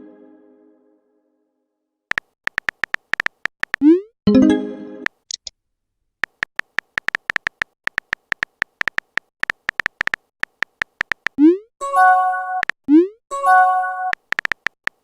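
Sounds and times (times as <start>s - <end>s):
high-pitched typing beeps: 2.1s - 4.4s, 6.6s - 15.0s.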